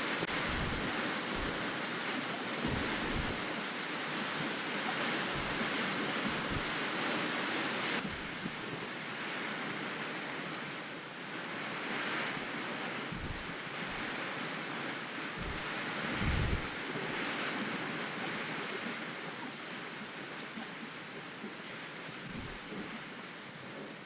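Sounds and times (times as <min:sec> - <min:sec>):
rain falling: 0:00.0 - 0:24.0
low rumbles: 0:00.2 - 0:02.0, 0:02.6 - 0:03.5, 0:05.3 - 0:06.8, 0:08.0 - 0:08.6, 0:13.1 - 0:14.0, 0:15.4 - 0:16.7.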